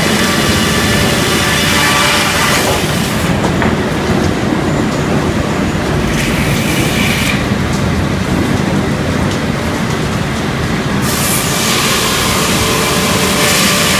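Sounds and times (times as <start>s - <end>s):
sawmill machinery clattering: 11.0s - 13.9s.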